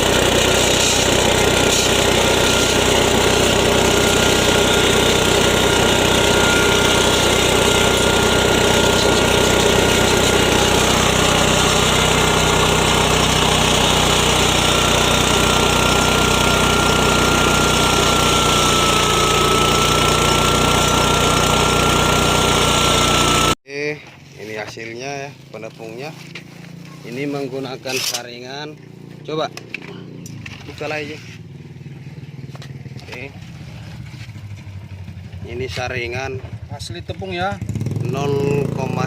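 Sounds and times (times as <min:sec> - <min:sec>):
grain mill engine running: 0:00.0 - 0:23.6.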